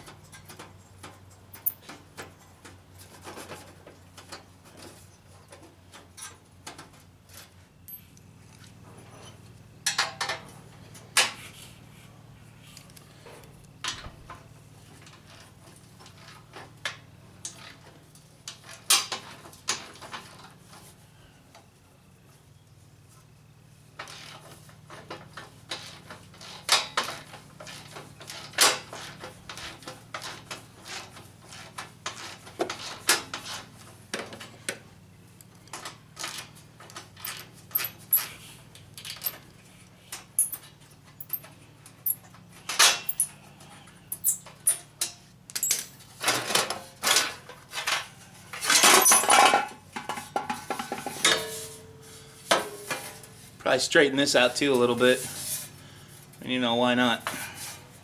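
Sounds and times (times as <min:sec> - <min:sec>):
metal tools clinking: 0:01.5 - 0:01.9, 0:37.2 - 0:39.4, 0:40.1 - 0:46.5, 0:48.6 - 0:51.8.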